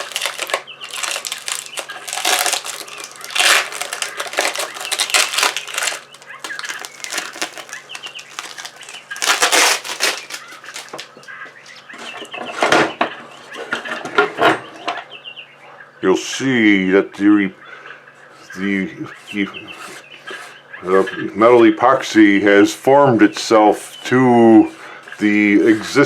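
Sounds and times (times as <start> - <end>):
songbirds chirping: 0.0 - 26.0.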